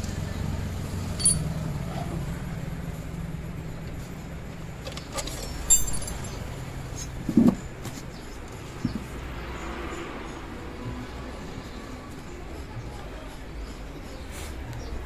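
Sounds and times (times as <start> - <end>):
metallic clinks of allen key: 1.2 - 1.6, 5.0 - 7.2.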